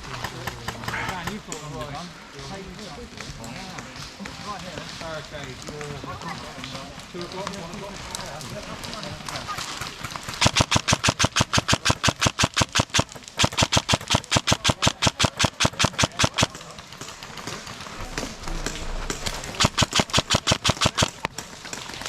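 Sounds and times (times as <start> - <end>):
airsoft gun firing bursts: 9.5 - 22.0.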